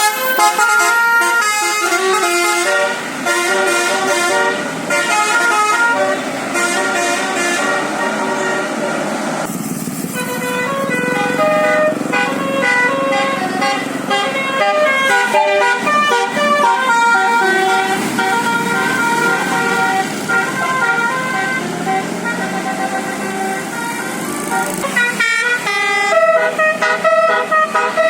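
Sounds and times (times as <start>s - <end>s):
bus musical air horn: 0.0s - 28.0s.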